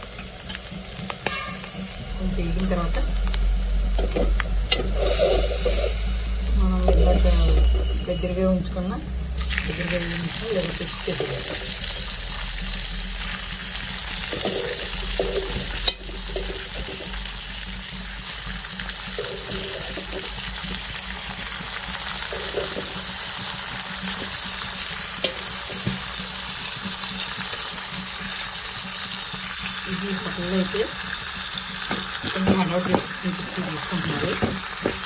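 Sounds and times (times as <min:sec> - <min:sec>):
liver sizzling in hot oil: 0:00.0 - 0:35.0
spatula scraping the pan: 0:04.7 - 0:06.1, 0:19.1 - 0:20.5, 0:22.2 - 0:23.5.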